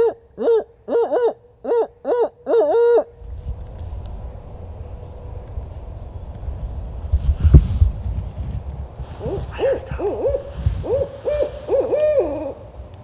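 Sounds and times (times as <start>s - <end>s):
owl hooting: 0.0s - 3.2s, 9.2s - 12.7s.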